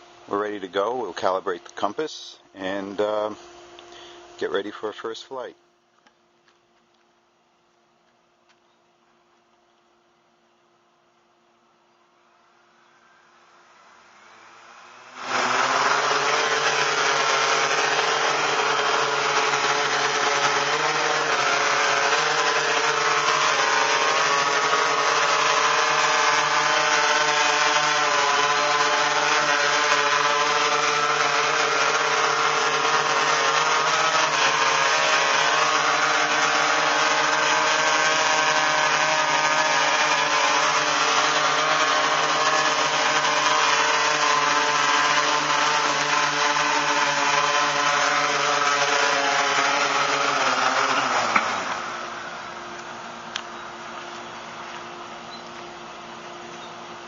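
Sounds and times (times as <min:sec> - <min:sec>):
drone propellers whirring: 0:12.2 - 0:57.0.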